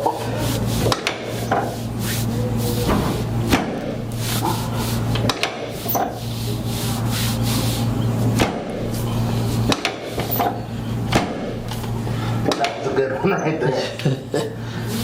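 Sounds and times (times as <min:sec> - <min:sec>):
low electric hum: 0:00.0 - 0:15.0
hands rubbing a back: 0:00.4 - 0:12.1
sharp knocks: 0:02.8 - 0:04.0, 0:08.4 - 0:08.9, 0:09.7 - 0:11.6.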